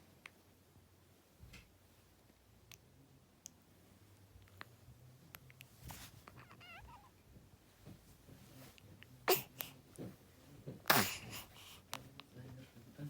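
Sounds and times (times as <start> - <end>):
baby squeaking: 6.4 - 7.1
baby snorting: 9.2 - 9.8, 10.8 - 11.9.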